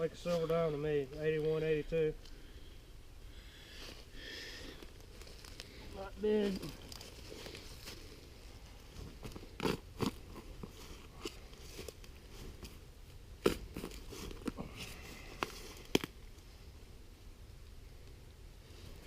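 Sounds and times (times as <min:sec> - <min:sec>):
digging tool crunching into soil: 0:13.4 - 0:15.0.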